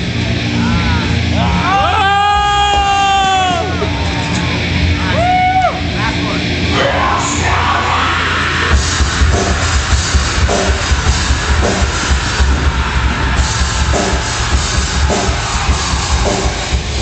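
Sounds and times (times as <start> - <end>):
fast pounding drums: 0.0 - 5.0, 8.6 - 17.0
heavy rock music: 0.0 - 17.0.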